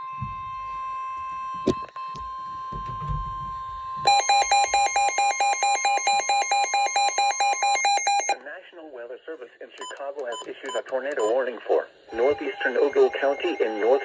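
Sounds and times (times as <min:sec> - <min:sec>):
electronic alarm beeping: 0:04.0 - 0:08.4, 0:12.1 - 0:14.0
steady high alert tone: 0:12.1 - 0:14.0.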